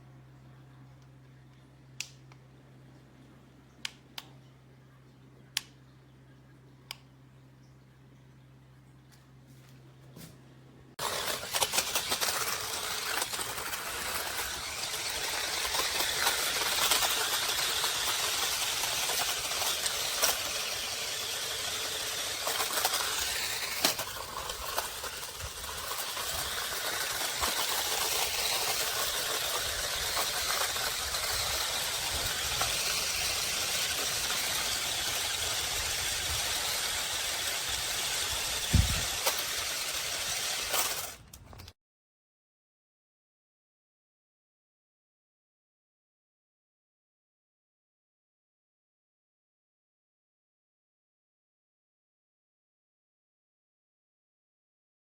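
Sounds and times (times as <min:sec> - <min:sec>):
toy car electric motors whirring: 0:11.0 - 0:41.7
toy car rattling clicking knocks: 0:11.0 - 0:41.7.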